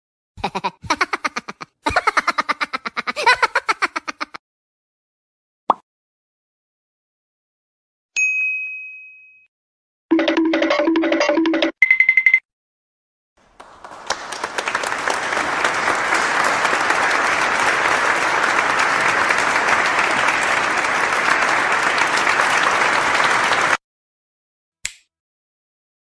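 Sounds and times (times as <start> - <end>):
crowd applause: 13.4 - 23.8.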